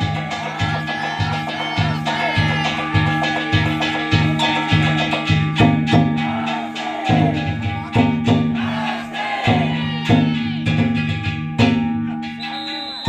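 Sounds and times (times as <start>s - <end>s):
hand gongs ringing: 0.0s - 13.0s
taiko drum strokes: 0.0s - 13.0s.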